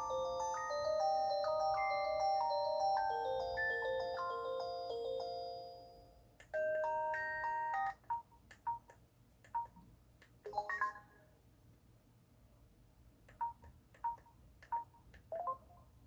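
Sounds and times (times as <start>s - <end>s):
melodic phone ringtone: 0.0s - 8.0s.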